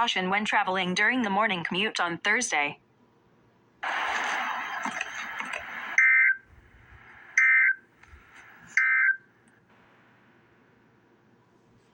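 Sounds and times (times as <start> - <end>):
loud hiss of noise: 3.8 - 6.0, 8.0 - 8.8.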